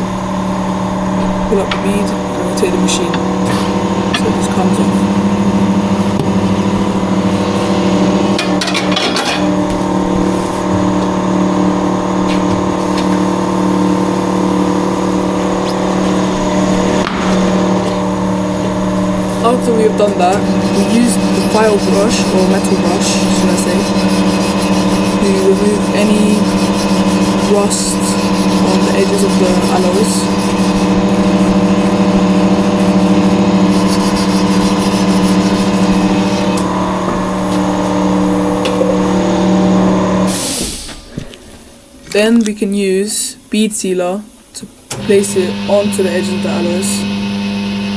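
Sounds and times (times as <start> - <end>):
tyre machine motor hum: 0.0 - 42.1, 44.8 - 47.9
brushing rust off metal: 18.6 - 36.6.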